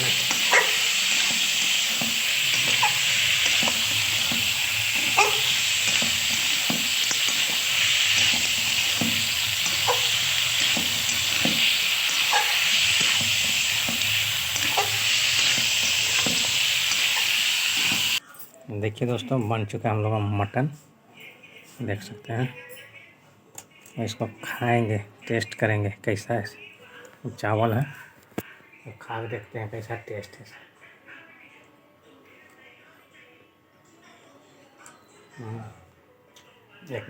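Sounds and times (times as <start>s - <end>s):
curry sizzling in a pot: 0.0s - 18.2s
spoon scraping a pot: 0.0s - 18.2s.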